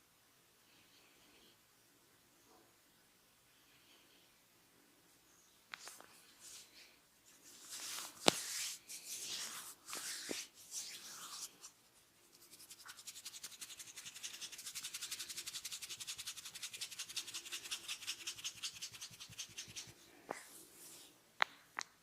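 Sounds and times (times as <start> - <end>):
hands scratching hair: 7.3 - 20.0.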